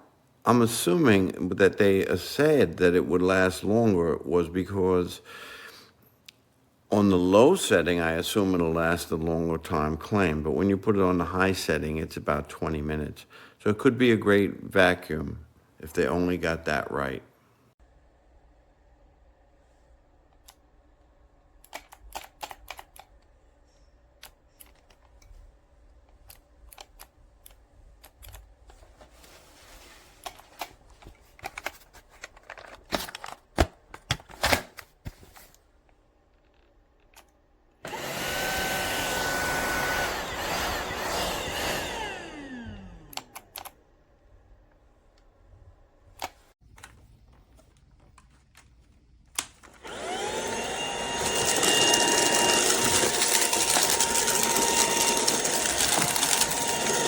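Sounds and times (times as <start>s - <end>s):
handling clicks and knocks: 30.2s - 35.4s
cordless vacuum motor whooshing: 37.9s - 43.6s, 49.7s - 57.0s.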